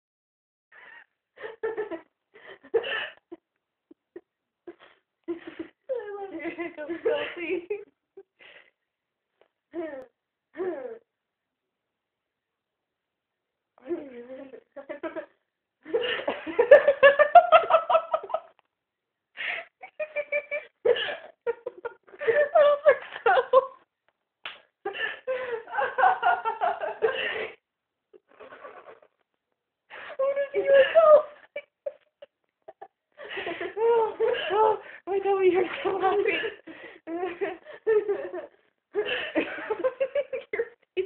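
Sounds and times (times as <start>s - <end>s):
girl giggling: 13.8s - 15.3s, 19.4s - 23.8s, 24.9s - 27.6s, 28.2s - 29.2s, 30.0s - 34.8s, 35.6s - 40.8s
high-pitched giggling: 13.8s - 15.4s, 19.6s - 23.8s, 28.2s - 29.2s.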